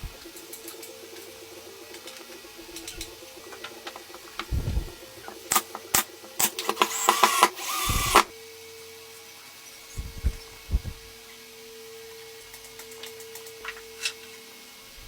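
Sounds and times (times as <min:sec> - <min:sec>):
steady low hum: 0:00.0 - 0:14.2
power tool whirring: 0:01.9 - 0:08.4
tool clicks and knocks: 0:05.3 - 0:08.3.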